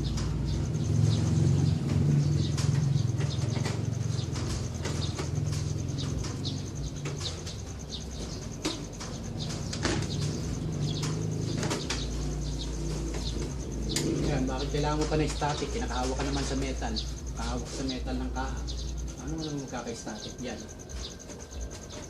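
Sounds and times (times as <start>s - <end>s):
birds chirping: 0.0s - 22.0s
low cooing drone: 0.0s - 22.0s
sharp clicks: 1.8s - 16.8s.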